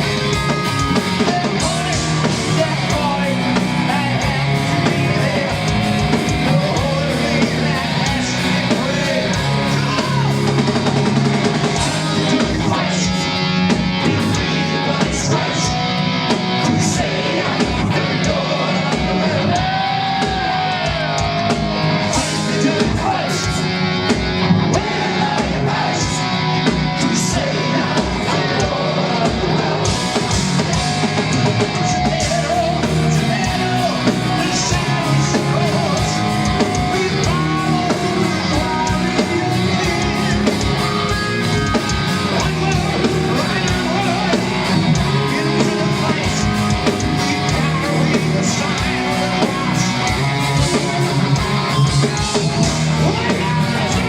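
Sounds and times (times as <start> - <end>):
person singing: 0.0 - 13.4, 24.7 - 54.0
distorted electric guitars: 0.0 - 54.0
drum kit with cymbals: 0.0 - 54.0.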